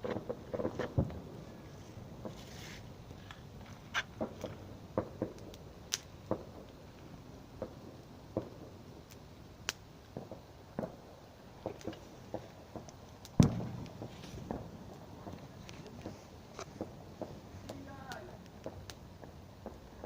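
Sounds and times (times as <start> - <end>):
low background hiss: 0.0 - 20.0
sharp pops and clicks: 3.2 - 6.7, 9.1 - 11.0.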